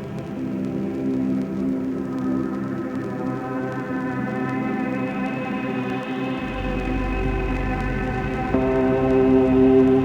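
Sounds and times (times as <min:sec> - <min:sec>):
ambient synthesizer drone music: 0:03.9 - 0:10.0.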